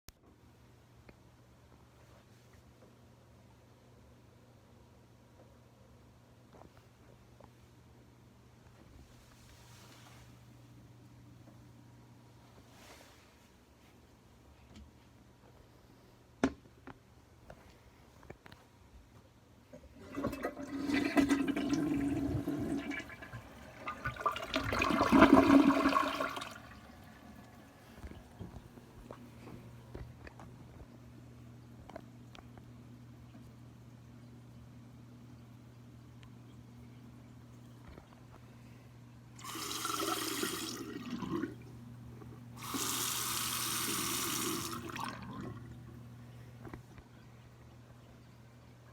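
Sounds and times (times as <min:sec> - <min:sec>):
toilet flush click: 0:20.0 - 0:27.6, 0:42.6 - 0:45.6
toilet water rushing: 0:20.0 - 0:28.2, 0:39.4 - 0:41.7, 0:42.6 - 0:45.8.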